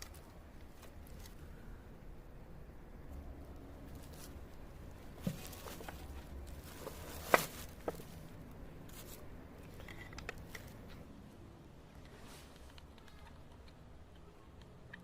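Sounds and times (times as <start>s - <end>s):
faint low hum: 0.0s - 15.0s
objects being handled knocking: 5.1s - 8.2s.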